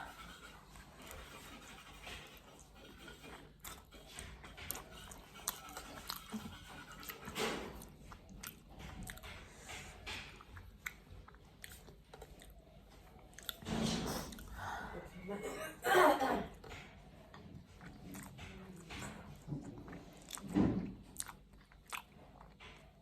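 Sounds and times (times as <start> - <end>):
person chewing crunchy food: 3.3 - 7.2, 7.8 - 9.4, 10.1 - 13.6, 17.3 - 23.0.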